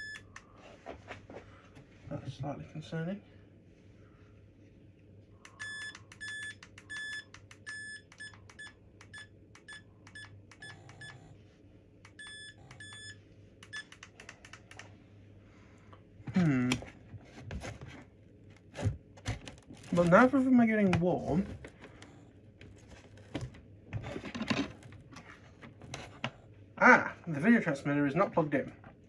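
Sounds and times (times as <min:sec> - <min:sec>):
small clicks: 0:13.6 - 0:14.9.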